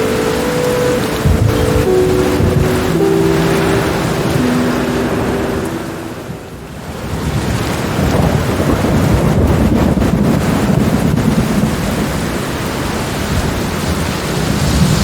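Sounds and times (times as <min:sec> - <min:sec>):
heavy rain: 0:00.0 - 0:15.0
rolling thunder: 0:01.1 - 0:04.8, 0:06.2 - 0:12.6.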